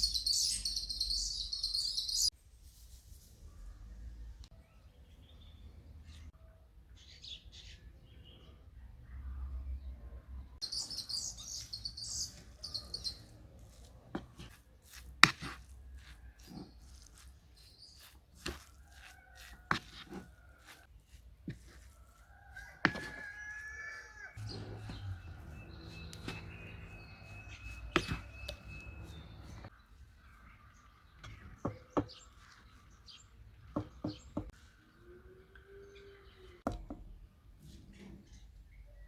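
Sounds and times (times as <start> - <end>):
high chirping: 0.0 - 2.3, 10.6 - 13.8, 24.3 - 29.7.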